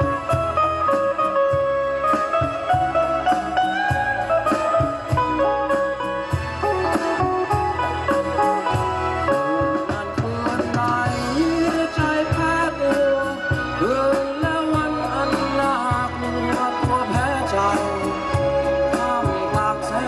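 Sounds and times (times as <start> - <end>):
bass and drum beat: 0.0 - 20.0
lead guitar melody: 0.0 - 20.0.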